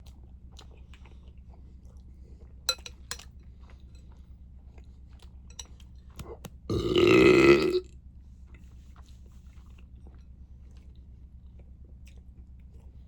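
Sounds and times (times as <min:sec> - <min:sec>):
person chewing food: 0:05.1 - 0:07.8.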